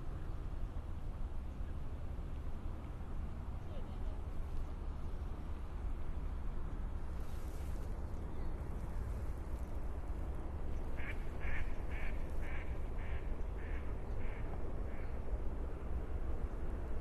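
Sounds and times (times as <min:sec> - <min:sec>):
low outdoor rumble: 0:00.0 - 0:17.0.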